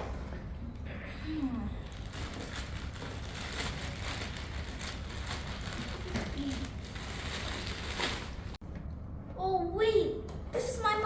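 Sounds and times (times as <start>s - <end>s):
cardboard package rustling: 2.0s - 8.6s.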